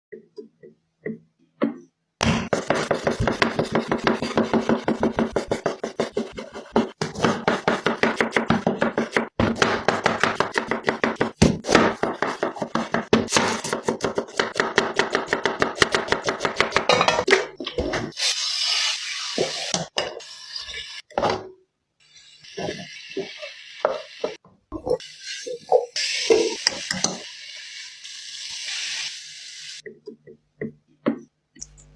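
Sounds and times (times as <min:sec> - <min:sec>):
knife chopping on cutting board: 0:02.2 - 0:16.9.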